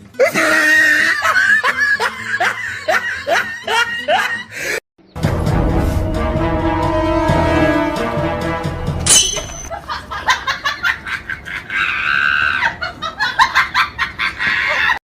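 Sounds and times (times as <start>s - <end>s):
music track: 5.2s - 9.7s
person laughing: 9.7s - 15.0s.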